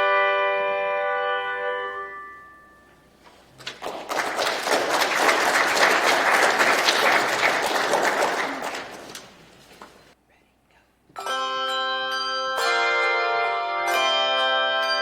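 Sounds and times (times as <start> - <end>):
audience applauding: 3.5 - 10.1.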